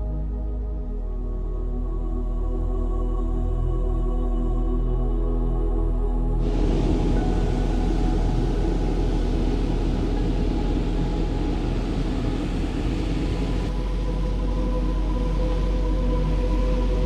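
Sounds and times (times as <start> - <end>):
faint music: 0.0 - 17.0
wind noise: 6.4 - 17.0.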